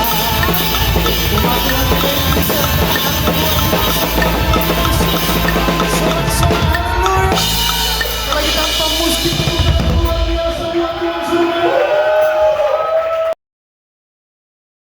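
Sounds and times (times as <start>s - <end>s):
held chord notes ringing: 0.0s - 10.0s
backing track music: 0.0s - 11.0s
fast drum kit playing: 0.0s - 11.0s.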